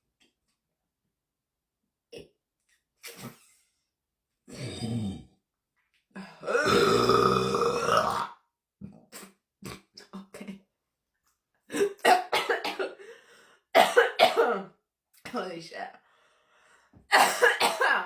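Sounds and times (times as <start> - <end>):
woman burping: 6.4 - 8.4.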